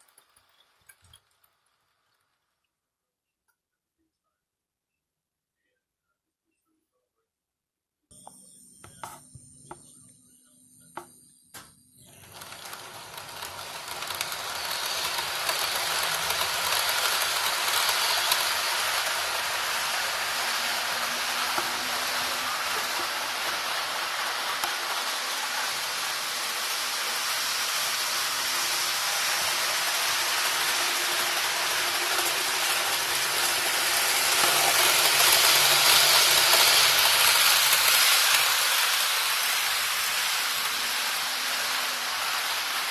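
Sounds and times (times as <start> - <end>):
model trains rumbling on track: 12.2 - 42.9.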